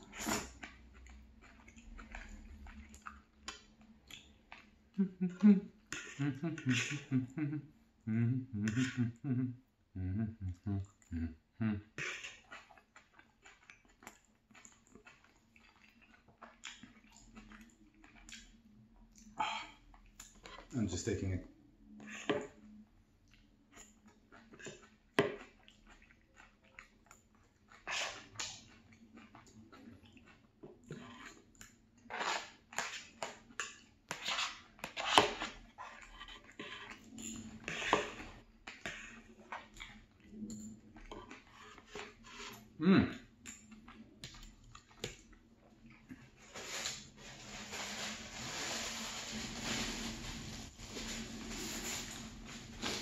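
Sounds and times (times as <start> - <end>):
wet noisy chewing: 0.0 - 5.1, 12.0 - 20.8
man chewing food: 0.0 - 9.5, 10.1 - 20.8, 21.8 - 48.0.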